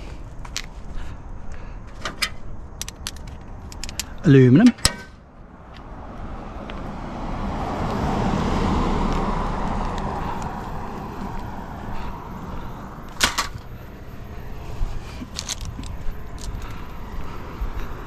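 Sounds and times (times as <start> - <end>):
car driving past: 5.4 - 13.2
sharp clicks or knocks: 13.1 - 13.7.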